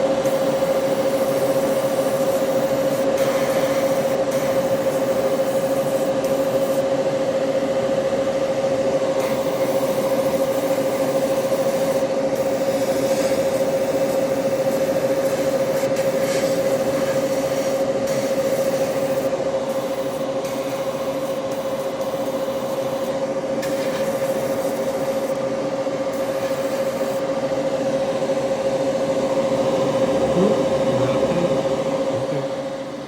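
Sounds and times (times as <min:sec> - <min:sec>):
air hissing: 0:00.0 - 0:06.8, 0:09.2 - 0:25.4, 0:26.1 - 0:27.3
airbrush compressor humming: 0:00.0 - 0:33.0.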